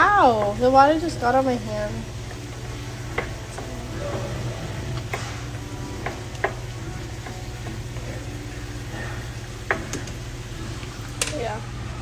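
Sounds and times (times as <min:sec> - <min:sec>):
utensil tapping against pot: 0:00.0 - 0:11.4
steady low hum: 0:00.0 - 0:12.0.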